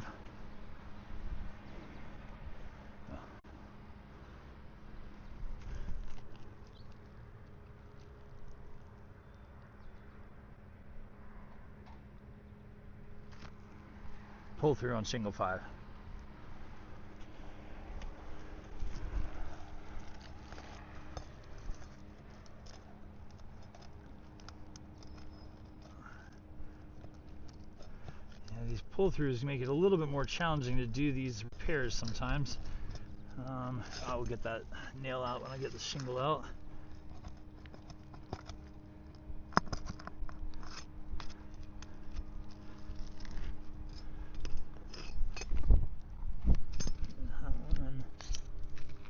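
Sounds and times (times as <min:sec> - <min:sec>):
faint steady hum: 0:00.0 - 0:49.0
tool scraping under shingles: 0:18.3 - 0:45.8
wind rumble on microphone: 0:43.2 - 0:49.0.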